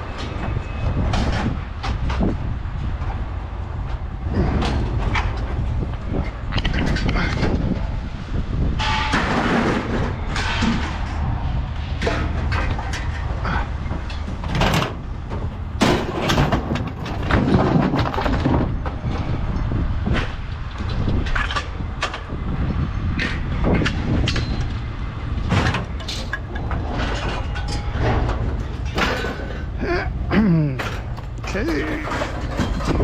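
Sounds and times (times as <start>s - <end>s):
scrap metal clanking: 8.8s - 11.2s, 12.0s - 19.3s, 25.4s - 33.0s.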